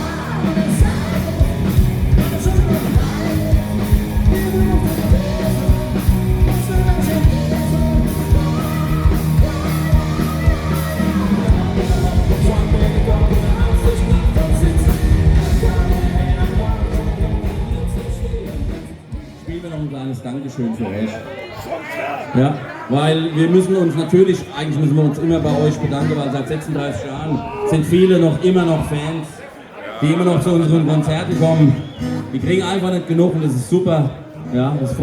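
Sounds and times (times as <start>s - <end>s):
person singing: 0.0s - 19.4s
live rock band playing: 0.0s - 19.6s, 31.0s - 32.5s
steady drum beat: 0.0s - 19.7s.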